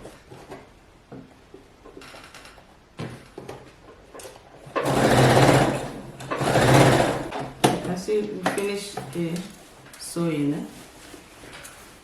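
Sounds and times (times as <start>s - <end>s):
sewing machine stitching: 4.7s - 7.5s.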